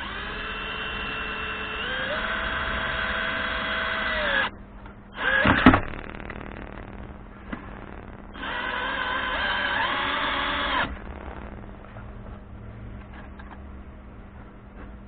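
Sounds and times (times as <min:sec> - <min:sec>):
cordless drill motor whining: 0:00.0 - 0:04.5, 0:05.1 - 0:06.8, 0:07.8 - 0:11.6.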